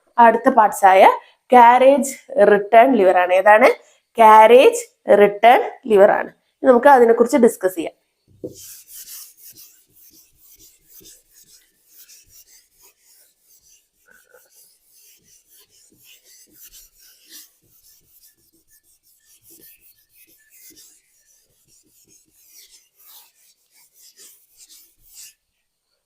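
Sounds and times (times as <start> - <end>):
pen scratching on paper: 8.4 - 25.4.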